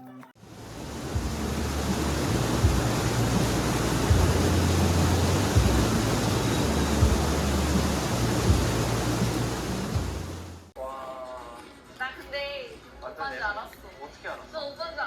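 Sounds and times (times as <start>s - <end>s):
water rushing: 0.4s - 10.7s
wind buffeting microphone: 0.5s - 10.7s.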